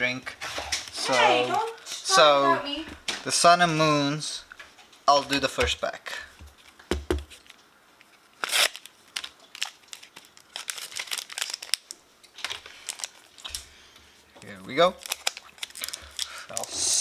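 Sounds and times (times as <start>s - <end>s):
foil wrapper crinkling and tearing: 7.4s - 13.7s, 14.4s - 16.9s.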